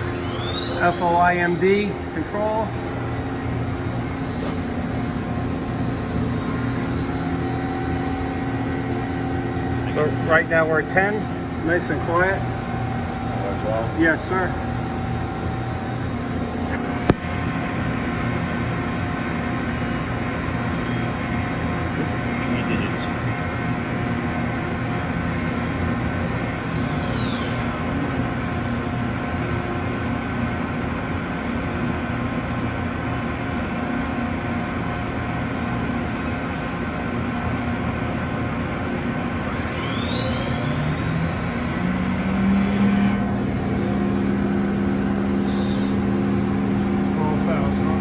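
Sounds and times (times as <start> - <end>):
high whine sweeping downward: 0.0 - 19.1, 25.6 - 29.6, 38.8 - 48.0
machine spindle humming: 0.0 - 48.0.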